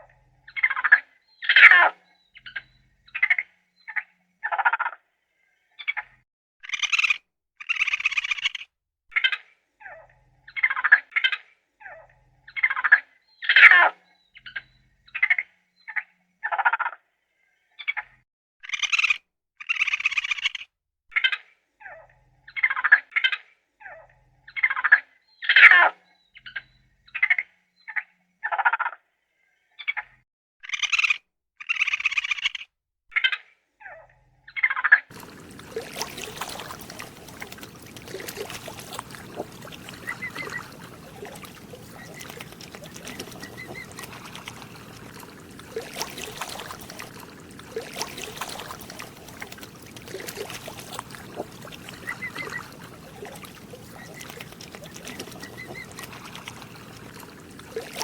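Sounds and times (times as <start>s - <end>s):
outdoor background noise: 35.1s - 58.0s
faint bird-like chirps: 35.2s - 58.0s.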